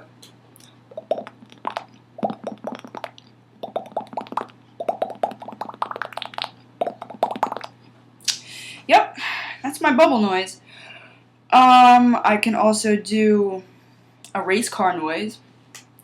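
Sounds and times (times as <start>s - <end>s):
wet mouth popping: 0.6s - 8.4s.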